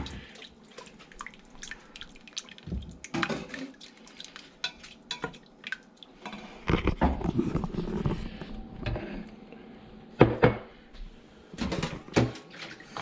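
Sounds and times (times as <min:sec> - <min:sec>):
water running: 0:00.0 - 0:06.5, 0:11.7 - 0:13.0.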